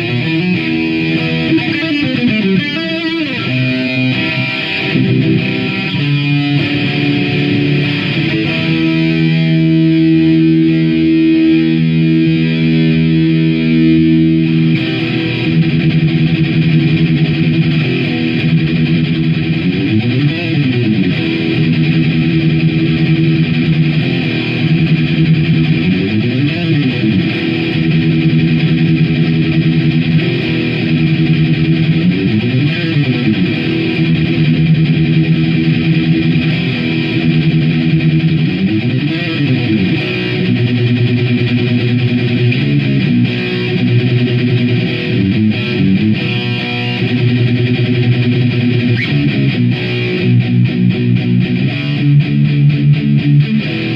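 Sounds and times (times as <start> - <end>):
distorted electric guitar: 0.0 - 53.9.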